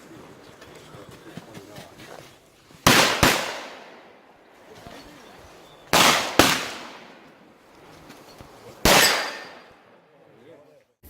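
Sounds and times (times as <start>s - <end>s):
pistol shots with echo: 2.8s - 7.6s, 8.8s - 10.0s.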